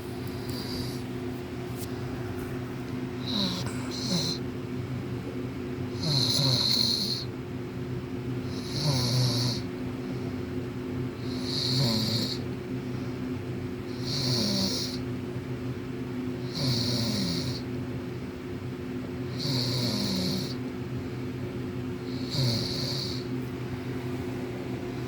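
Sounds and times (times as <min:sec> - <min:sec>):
man snoring: 0:00.4 - 0:01.1, 0:03.2 - 0:04.4, 0:06.0 - 0:07.3, 0:08.5 - 0:09.7, 0:11.2 - 0:12.4, 0:13.9 - 0:15.0, 0:16.5 - 0:17.6, 0:19.3 - 0:20.6, 0:22.1 - 0:23.3.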